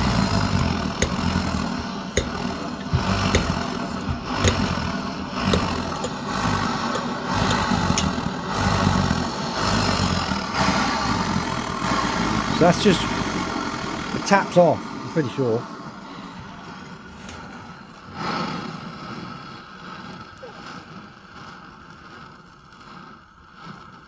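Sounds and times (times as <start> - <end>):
hand pump clicking: 0.0 - 12.0.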